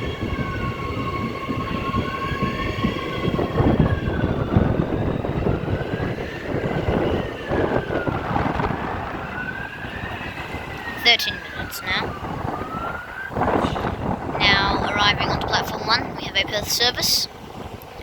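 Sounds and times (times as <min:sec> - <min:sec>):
emergency siren wailing: 0:00.0 - 0:18.0
wind buffeting microphone: 0:00.0 - 0:18.0.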